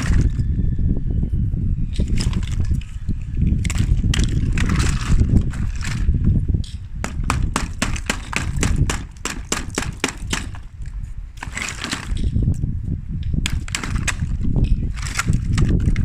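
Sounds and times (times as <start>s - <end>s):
steady low rumble: 0.0s - 16.0s
scraping: 2.0s - 12.5s.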